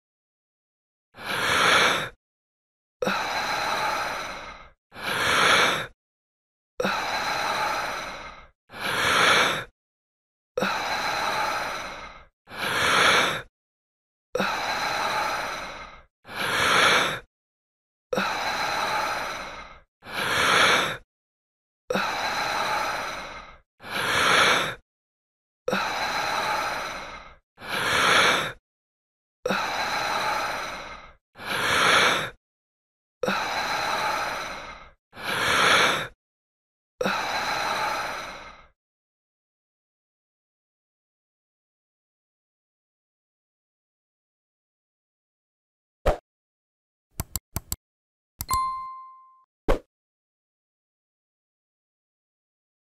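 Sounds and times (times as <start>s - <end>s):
person breathing deeply: 3.0s - 6.0s, 6.8s - 9.7s, 10.6s - 13.5s, 14.4s - 17.3s, 18.2s - 21.0s, 21.9s - 24.8s, 25.7s - 28.6s, 29.5s - 32.4s, 33.2s - 36.2s.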